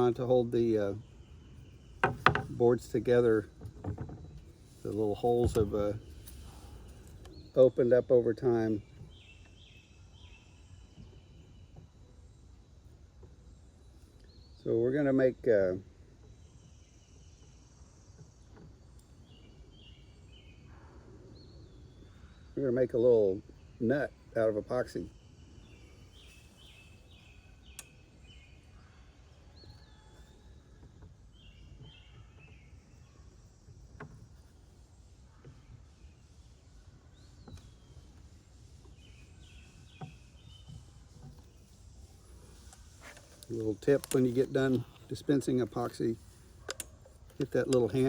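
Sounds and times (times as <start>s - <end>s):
light clicks: 42.7s - 45.2s.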